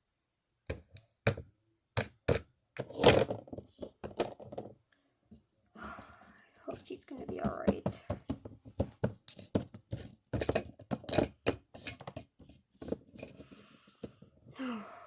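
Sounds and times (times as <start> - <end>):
plastic toys clicking and tapping: 6.8 - 14.2.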